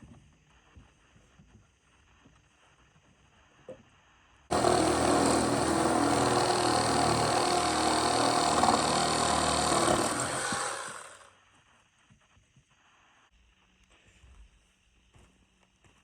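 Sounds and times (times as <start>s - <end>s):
electric power tool motor running: 4.5s - 11.2s.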